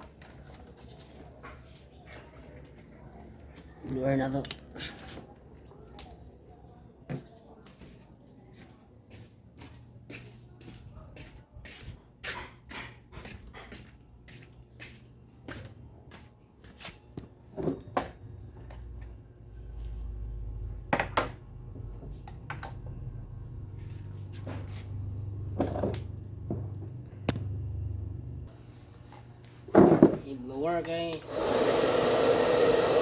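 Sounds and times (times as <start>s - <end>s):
low steady hum: 17.8s - 29.6s.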